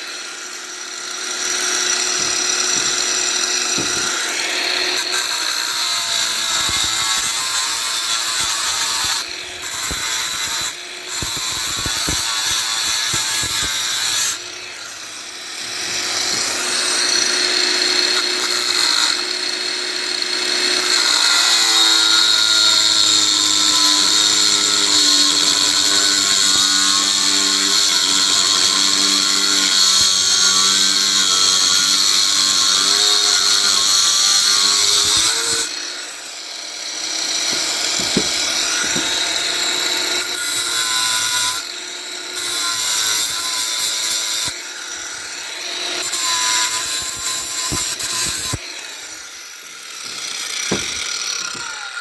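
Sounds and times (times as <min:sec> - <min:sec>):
power tool grinding metal: 0:00.0 - 0:52.0.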